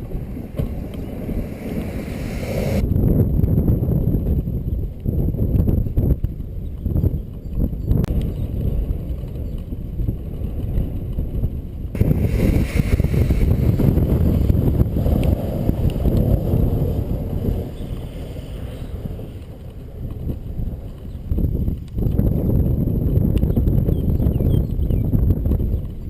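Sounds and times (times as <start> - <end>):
wind buffeting microphone: 0.0 - 26.0.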